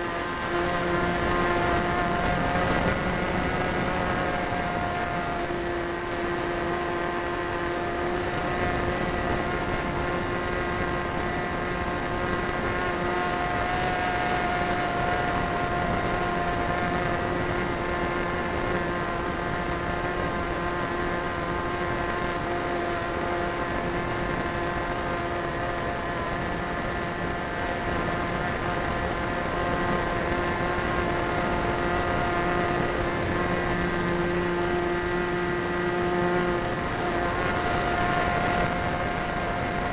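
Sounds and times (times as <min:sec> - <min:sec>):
model plane engine high pitch: 0:00.0 - 0:39.9.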